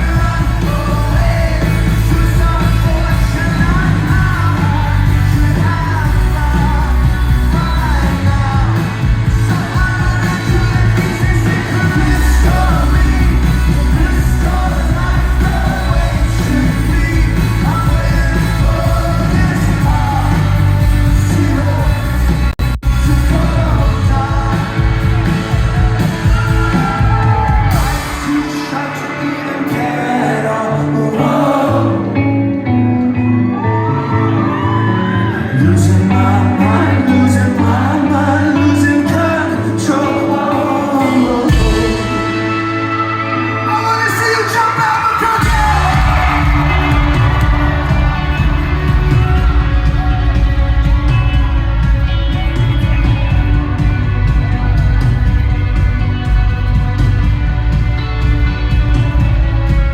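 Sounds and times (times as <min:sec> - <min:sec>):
lead singer singing: 0:00.0 - 0:59.9
live rock band playing: 0:00.0 - 0:59.9.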